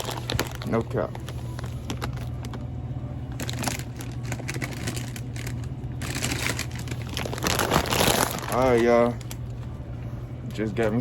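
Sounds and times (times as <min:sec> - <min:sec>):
plastic bags crinkling: 0:00.0 - 0:02.6, 0:03.3 - 0:09.4
steady low hum: 0:00.0 - 0:11.0.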